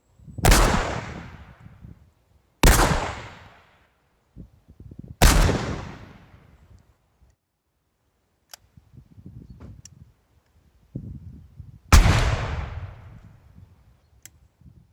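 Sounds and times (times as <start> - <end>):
gunshot with reverberation: 0.4 - 1.5, 2.6 - 3.6, 5.2 - 6.3, 11.9 - 13.4.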